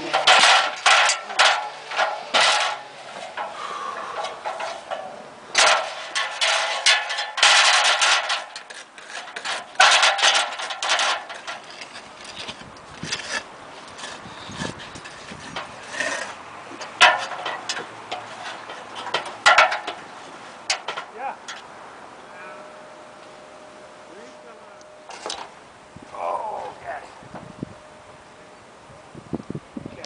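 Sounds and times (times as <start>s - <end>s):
scraping and knocking on roof: 5.6s - 20.1s.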